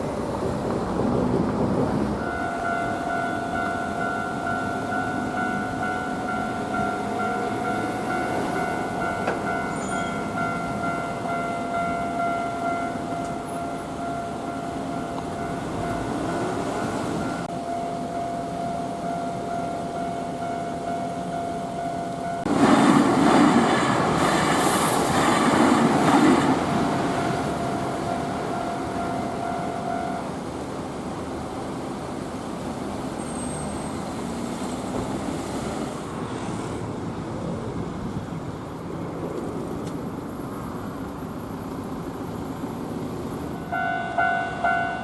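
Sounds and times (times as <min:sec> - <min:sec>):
electric train passing: 0:00.0 - 0:45.0
level crossing warning bell: 0:02.2 - 0:22.6, 0:26.6 - 0:30.6, 0:43.6 - 0:45.0.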